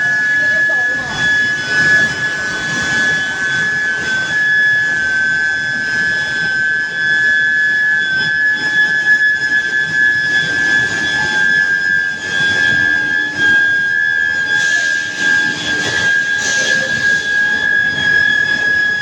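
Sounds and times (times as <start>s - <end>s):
machine rumble: 0.0s - 6.7s
high-pitched induction whine: 0.0s - 19.0s.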